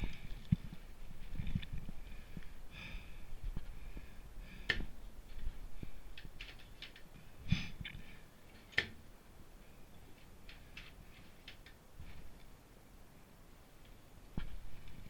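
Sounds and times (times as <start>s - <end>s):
sharp clicks: 8.7s - 9.0s.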